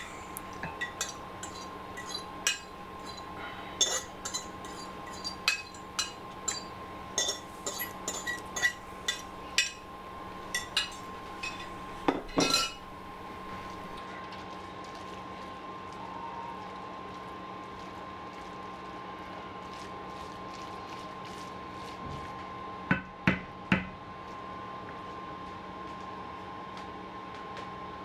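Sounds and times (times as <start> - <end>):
spoon clinking against pot: 0.0 - 14.0.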